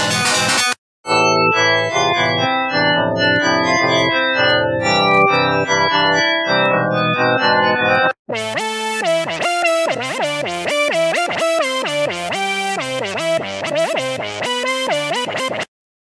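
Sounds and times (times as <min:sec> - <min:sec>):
synthesizer bass line gliding: 0:08.3 - 0:15.7.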